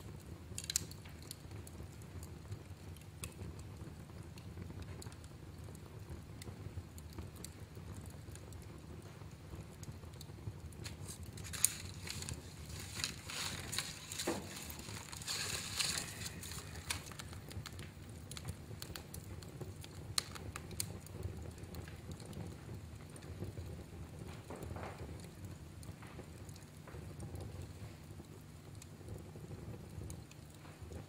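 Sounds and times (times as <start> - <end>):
fire crackling and popping: 0.0 - 31.0
fire rumbling: 0.0 - 31.0.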